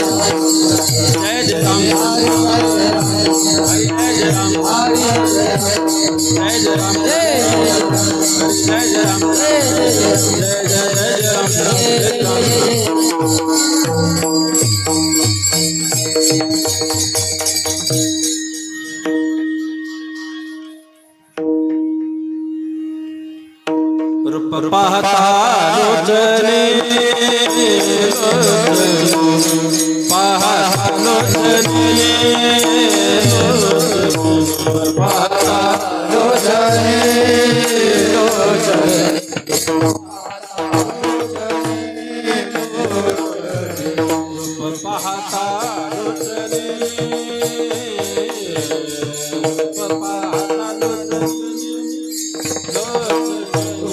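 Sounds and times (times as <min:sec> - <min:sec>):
person singing: 0:00.0 - 0:16.2, 0:24.2 - 0:51.9, 0:52.6 - 0:53.9
hand drum rhythm: 0:00.0 - 0:18.3, 0:26.6 - 0:53.9
jingling cymbals: 0:00.0 - 0:21.4, 0:27.0 - 0:53.9
held harmonium note: 0:00.0 - 0:53.9.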